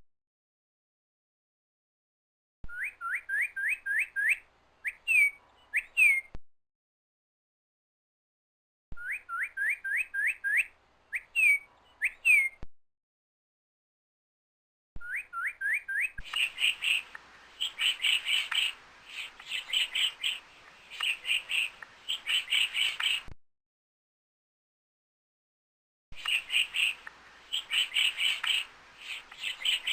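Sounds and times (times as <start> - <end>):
bird rapid chirps: 2.7 - 6.3, 9.0 - 12.6, 15.0 - 23.3, 26.2 - 29.9
bird whistling rising notes: 2.7 - 6.3, 9.0 - 12.6, 15.0 - 17.0, 17.6 - 23.3, 26.3 - 29.9.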